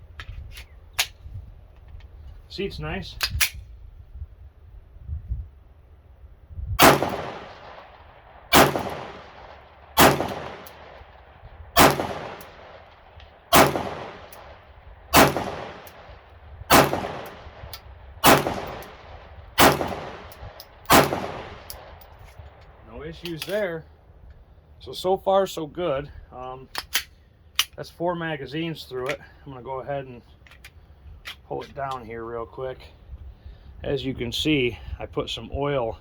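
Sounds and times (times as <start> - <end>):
pistol shots with echo: 6.8 - 22.0.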